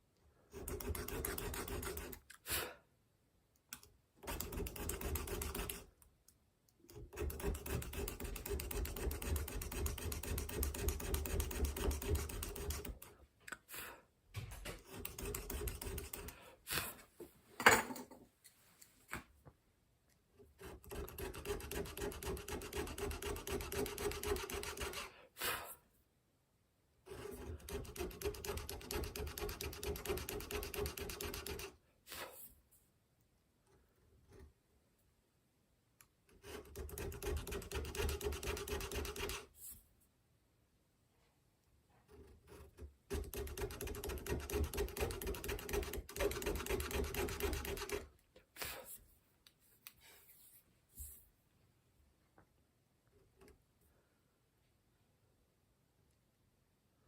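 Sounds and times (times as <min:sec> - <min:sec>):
hand tool rasping: 0:20.6 - 0:25.1.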